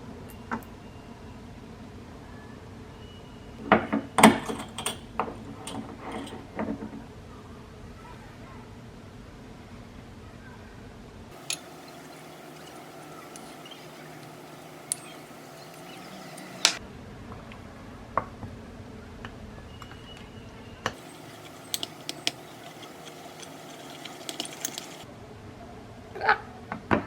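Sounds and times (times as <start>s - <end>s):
low background hum: 11.3s - 16.8s, 21.0s - 25.1s
kitchen clicks and clinks: 11.4s - 16.8s, 21.0s - 25.1s.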